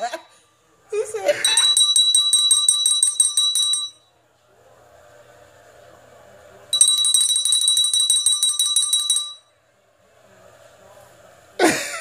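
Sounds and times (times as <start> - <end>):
bell ringing in fast trill: 1.4 - 4.0, 6.7 - 9.5.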